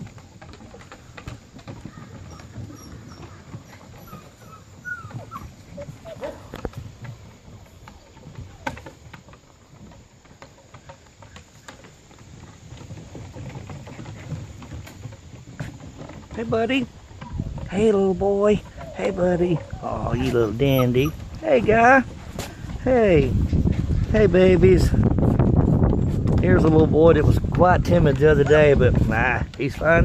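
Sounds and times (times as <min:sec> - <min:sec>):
puppies whimpering: 0:01.7 - 0:07.0, 0:17.2 - 0:22.0, 0:28.2 - 0:28.9.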